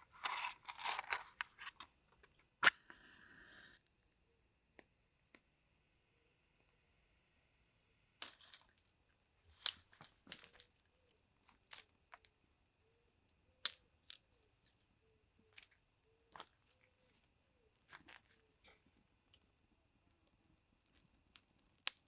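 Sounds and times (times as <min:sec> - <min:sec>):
wood crackling in a fire: 0:15.5 - 0:22.0.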